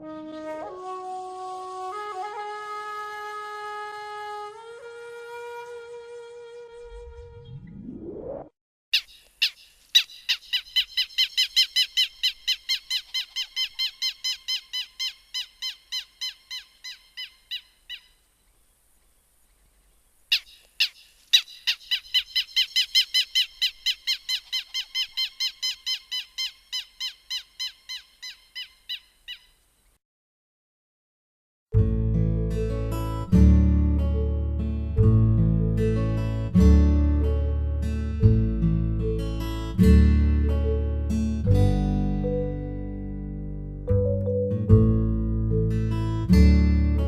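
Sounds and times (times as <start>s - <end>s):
short rising sweep: 6.7s - 8.6s
canary alarm call chirps: 8.9s - 18.2s, 20.3s - 29.6s.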